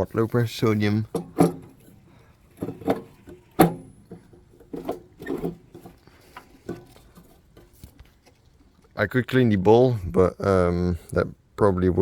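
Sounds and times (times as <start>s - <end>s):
handling clicks and knocks: 1.0s - 9.0s.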